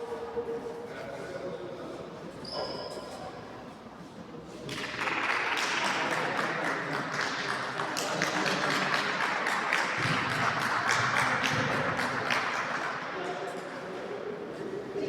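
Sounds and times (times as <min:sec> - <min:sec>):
spectators clapping: 0:04.7 - 0:13.4.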